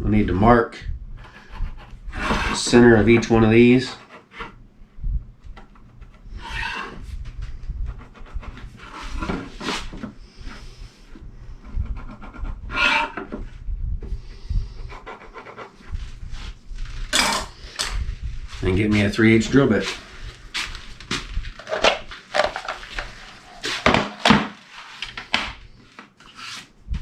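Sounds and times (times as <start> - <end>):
pencil scratching on wood: 1.2 - 4.6, 5.8 - 7.1, 7.8 - 10.6, 11.6 - 13.4, 14.8 - 16.6
square handled against wood: 5.6 - 7.0, 11.9 - 13.4.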